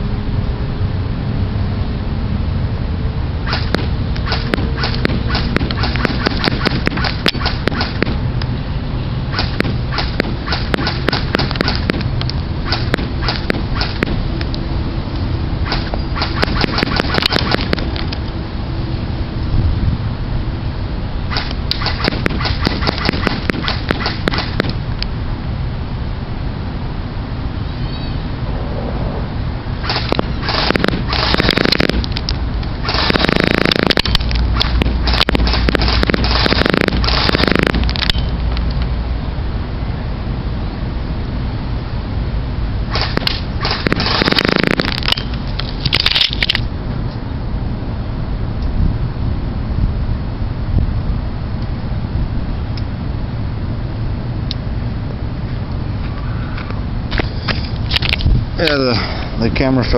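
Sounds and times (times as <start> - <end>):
low background noise: 0.0 - 59.9
wind rumble on microphone: 0.0 - 59.9
airsoft gun shots: 3.5 - 8.2, 9.3 - 14.2, 15.6 - 18.0, 21.3 - 24.8, 29.8 - 32.2, 32.8 - 38.3, 42.9 - 45.3
sharp clicks: 3.5 - 8.5, 9.3 - 14.6, 15.7 - 18.3, 21.3 - 24.8, 29.8 - 38.9, 42.9 - 46.7.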